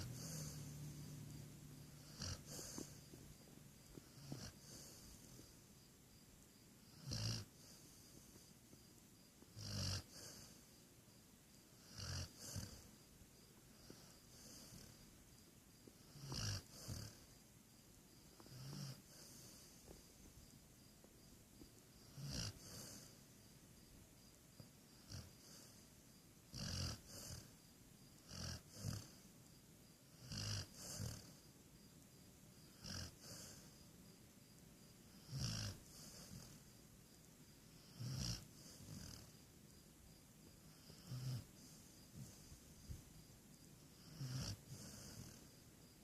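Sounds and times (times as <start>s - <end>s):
snorting snores: 0.0s - 5.5s, 6.8s - 8.5s, 9.5s - 10.7s, 11.8s - 13.0s, 13.8s - 15.1s, 15.9s - 17.4s, 18.4s - 20.1s, 22.0s - 23.2s, 25.0s - 25.8s, 26.5s - 27.6s, 28.2s - 29.3s, 30.1s - 31.5s, 32.7s - 33.8s, 35.1s - 36.7s, 37.8s - 39.4s, 40.6s - 43.0s, 43.9s - 45.6s.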